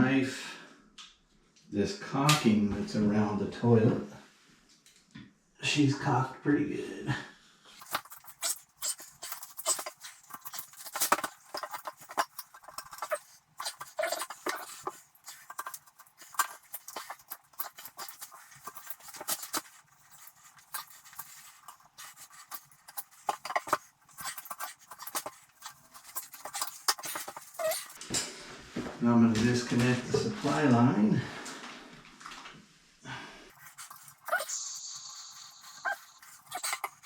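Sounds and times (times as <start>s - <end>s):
knife scraping caulk: 7.8s - 28.0s.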